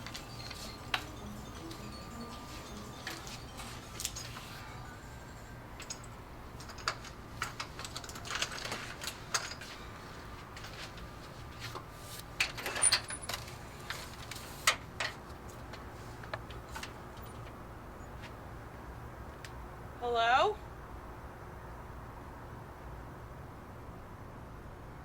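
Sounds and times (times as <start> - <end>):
hard objects clicking and rattling: 5.7 - 11.1.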